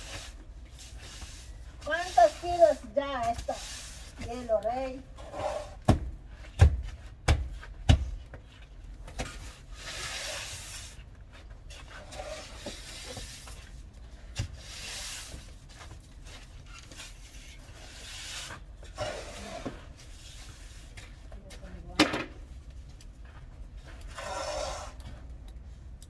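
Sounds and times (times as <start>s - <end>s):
shovel scraping snow: 9.7s - 11.0s, 17.8s - 20.8s.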